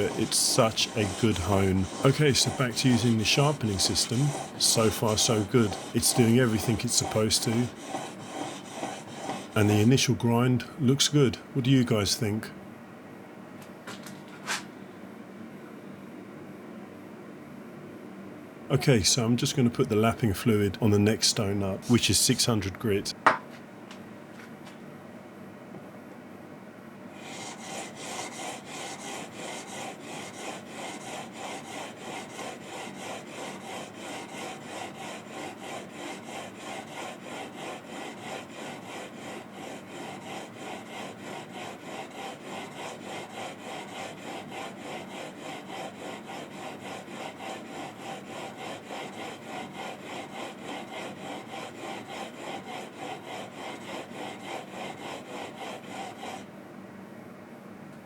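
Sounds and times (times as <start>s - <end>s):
chisel scraping on sharpening stone: 0.0s - 10.1s, 27.2s - 56.4s.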